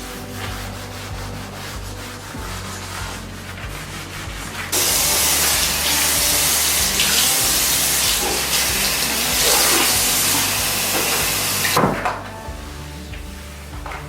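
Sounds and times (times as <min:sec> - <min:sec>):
water running from a tap: 0:04.4 - 0:12.2.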